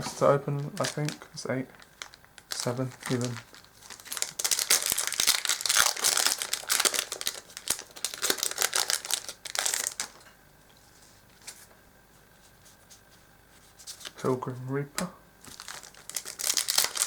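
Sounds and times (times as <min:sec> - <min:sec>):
foil wrapper tearing and crinkling: 0:00.6 - 0:10.3, 0:15.4 - 0:17.0.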